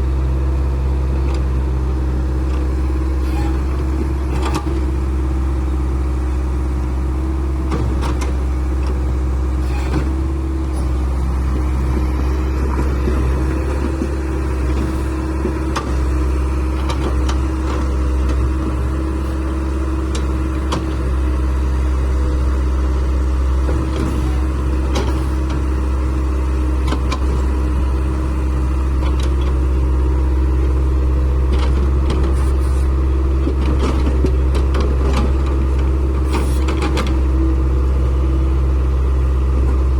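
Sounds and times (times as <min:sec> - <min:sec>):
heavy machine engine humming: 0:00.0 - 0:39.9.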